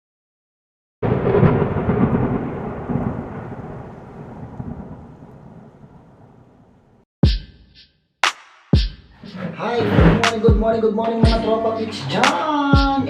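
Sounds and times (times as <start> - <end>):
loud crash with long rumble: 1.0 - 5.6.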